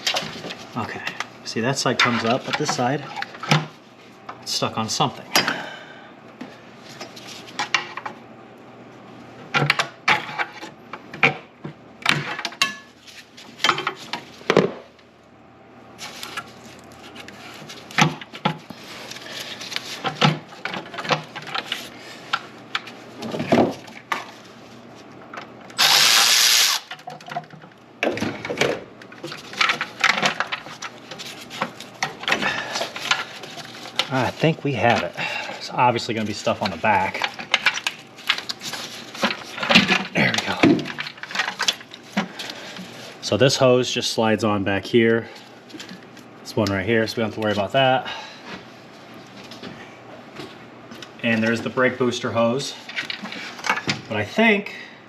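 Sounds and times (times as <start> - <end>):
power tool burst: 25.8 - 26.9
tools and plastic parts rattling: 26.9 - 35.1, 36.2 - 43.0.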